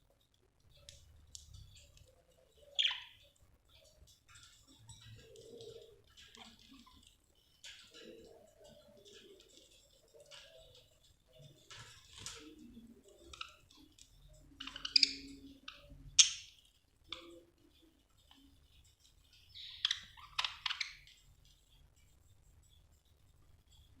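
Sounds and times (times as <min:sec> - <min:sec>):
soft bird chatter: 0:00.0 - 0:24.0
budgerigar chirping: 0:02.6 - 0:03.2, 0:14.6 - 0:16.5, 0:19.5 - 0:21.1.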